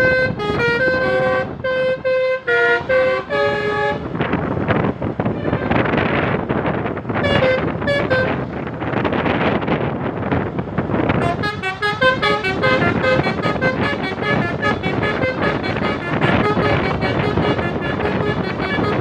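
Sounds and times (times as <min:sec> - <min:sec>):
multi-tone horn playing a tune: 0:00.0 - 0:04.2, 0:05.3 - 0:06.0, 0:07.2 - 0:08.5, 0:11.2 - 0:19.0
road noise: 0:00.0 - 0:19.0.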